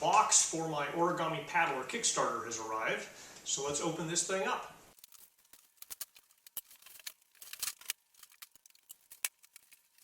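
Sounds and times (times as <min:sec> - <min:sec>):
packaging being cut and handled: 0:05.0 - 0:10.0.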